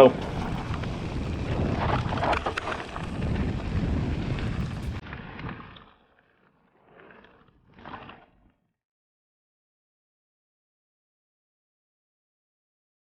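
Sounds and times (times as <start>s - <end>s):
wind buffeting microphone: 0.0s - 5.0s.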